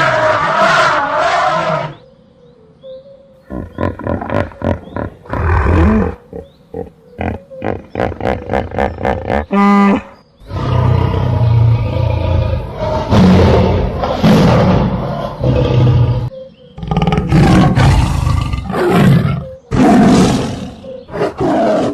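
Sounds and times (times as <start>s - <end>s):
large animal roaring: 3.4s - 8.9s, 10.5s - 21.9s.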